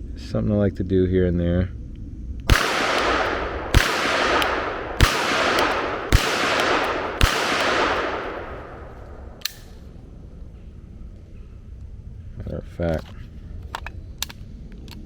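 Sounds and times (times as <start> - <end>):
pistol shots with echo: 2.5 - 9.7
small sharp click: 9.4 - 9.8.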